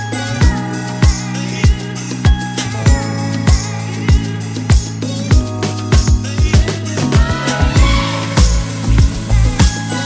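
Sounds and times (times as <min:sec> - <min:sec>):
kick drum beat: 0:00.4 - 0:09.8
deep sliding bass notes: 0:07.6 - 0:09.6.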